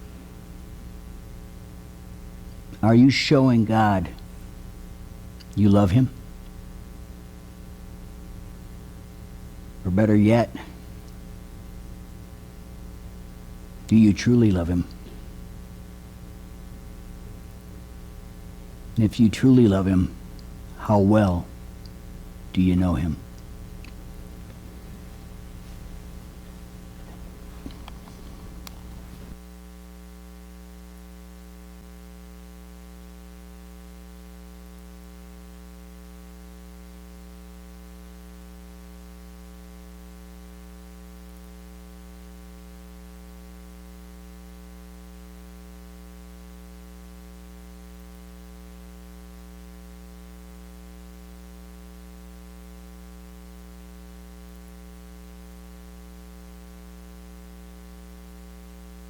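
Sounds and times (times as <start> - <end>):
faint hiss: 0.0 - 29.4
electrical mains hum: 0.0 - 59.0.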